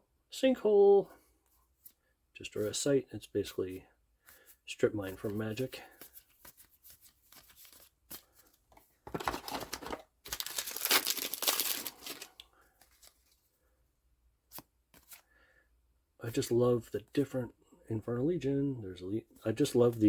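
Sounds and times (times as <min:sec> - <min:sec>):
cards being handled: 0:04.3 - 0:13.4, 0:14.4 - 0:15.3
wrapper crinkling: 0:09.1 - 0:13.4
booster pack tearing: 0:09.2 - 0:12.4.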